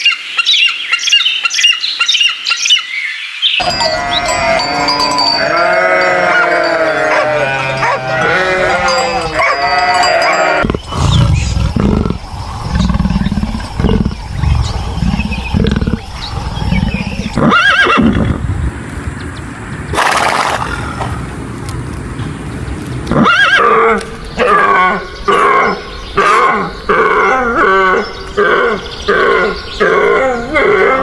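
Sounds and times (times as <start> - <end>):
wavering overlapping animal calls: 3.6 - 18.4, 23.1 - 31.0
deep low animal calls: 3.6 - 18.8, 19.9 - 21.5, 23.1 - 31.0.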